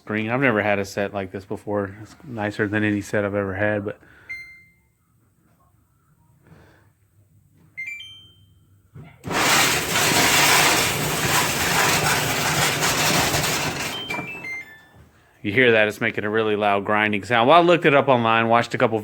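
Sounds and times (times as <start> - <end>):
dryer control panel beeps: 4.3 - 4.8, 7.8 - 8.6, 13.9 - 15.0
dryer drum grinding: 9.2 - 14.6.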